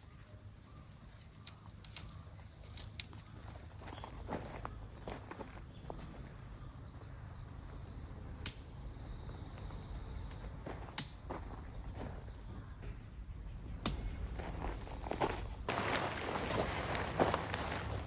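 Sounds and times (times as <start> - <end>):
insects shrilling: 0.0 - 18.0
sharp clicks or snaps: 8.4 - 8.7, 11.0 - 11.2.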